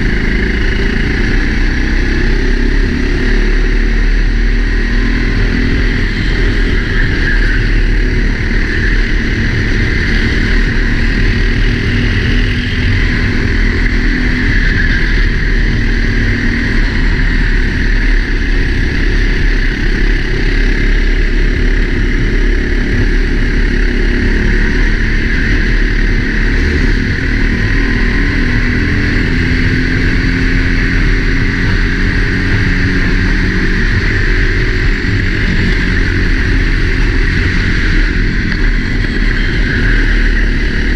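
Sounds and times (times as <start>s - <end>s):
kart engine running hard: 0.0s - 40.9s.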